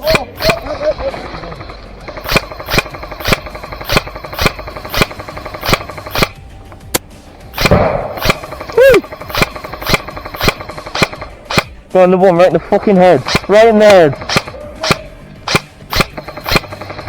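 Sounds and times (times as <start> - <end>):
airsoft gun shots cracking: 0.0 - 17.0
rising and falling pitched call: 8.6 - 9.2.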